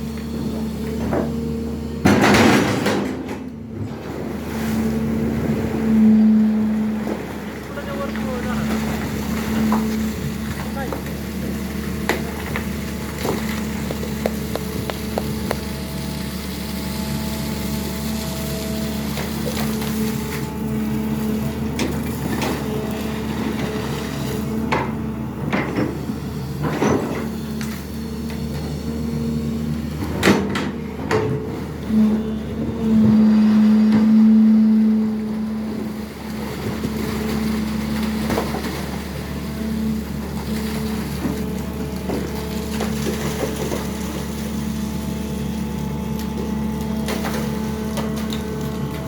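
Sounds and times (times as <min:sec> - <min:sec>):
excavator diesel engine running: 0:00.0 - 0:49.0
metal knocks and clanks: 0:02.0 - 0:04.3.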